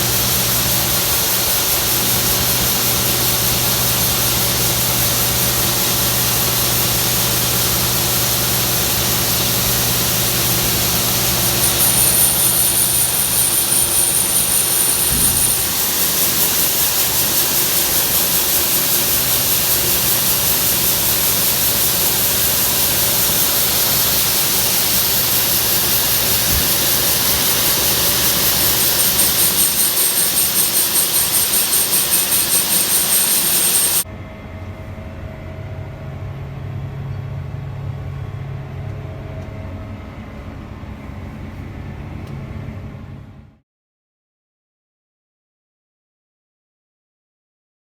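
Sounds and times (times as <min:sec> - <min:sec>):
combine harvester rushing: 0:00.0 - 0:34.0
thin high whine: 0:00.0 - 0:34.0
engine hum: 0:00.0 - 0:35.3.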